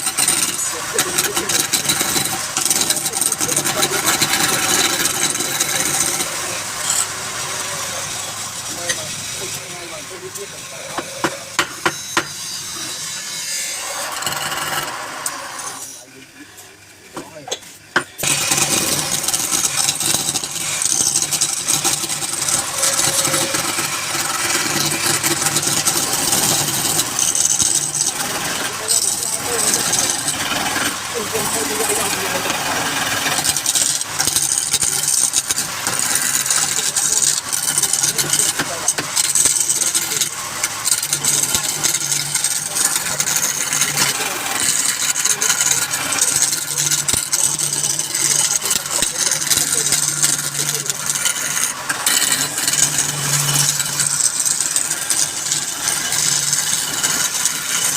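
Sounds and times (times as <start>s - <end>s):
turning tool hissing on wood: 0.0s - 16.1s, 18.2s - 57.9s
wood lathe motor hum: 0.0s - 16.1s, 18.0s - 57.9s.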